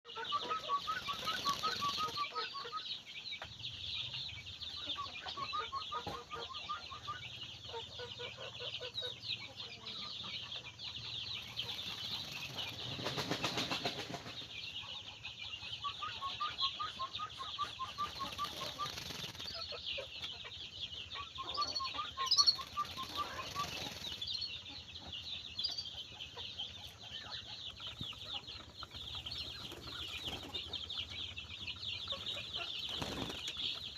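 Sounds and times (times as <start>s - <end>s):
small birds chirping: 0.1s - 33.9s.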